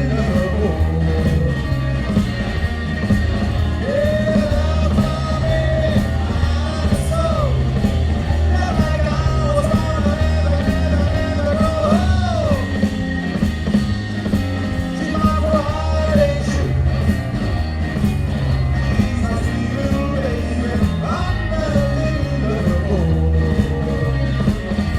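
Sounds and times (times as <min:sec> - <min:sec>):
person singing: 0:00.0 - 0:02.2, 0:03.6 - 0:13.4, 0:14.7 - 0:17.1, 0:18.5 - 0:24.9
blues band playing: 0:00.0 - 0:24.9.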